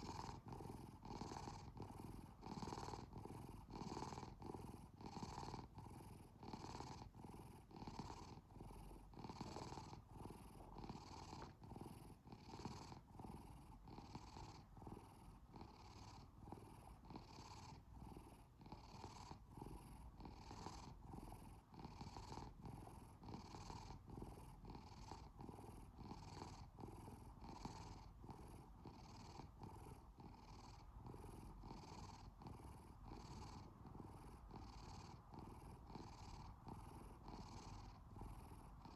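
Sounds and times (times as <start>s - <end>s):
cat purring: 0.0s - 38.9s.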